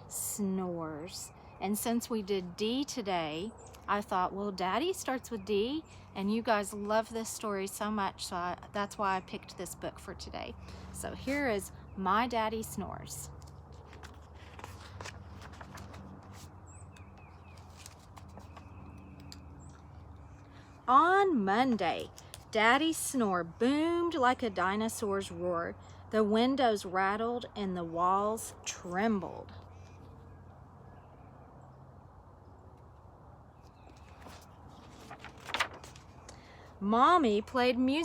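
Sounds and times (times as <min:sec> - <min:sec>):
faint rustles: 0:13.3 - 0:16.6, 0:33.6 - 0:36.8
low hum: 0:35.2 - 0:35.8.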